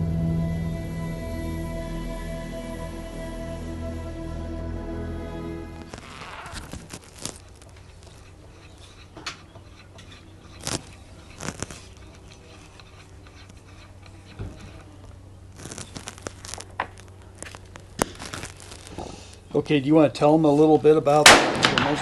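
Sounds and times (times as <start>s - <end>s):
steady low hum: 0.0s - 22.0s
faint rustling: 5.8s - 21.2s.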